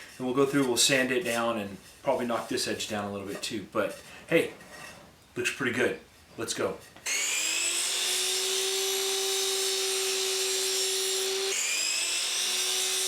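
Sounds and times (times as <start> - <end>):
power saw motor whining: 7.0 - 13.0.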